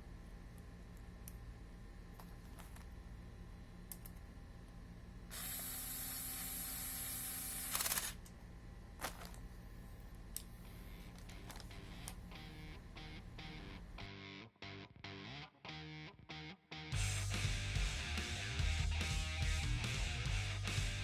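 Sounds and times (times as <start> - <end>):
cordless screwdriver motor whirring: 5.3 - 8.2.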